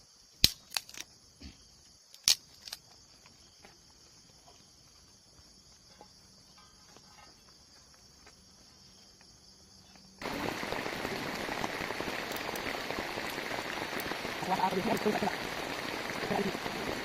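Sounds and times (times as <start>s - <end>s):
insects chirring: 0.0s - 17.0s
dense rain patter: 10.2s - 17.0s.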